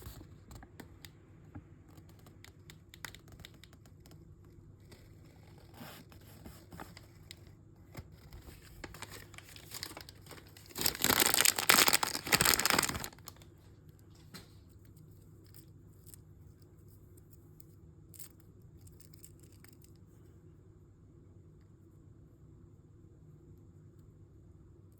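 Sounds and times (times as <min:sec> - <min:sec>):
plastic packaging crinkling: 0:08.4 - 0:13.5
plastic packaging tearing: 0:08.5 - 0:13.4.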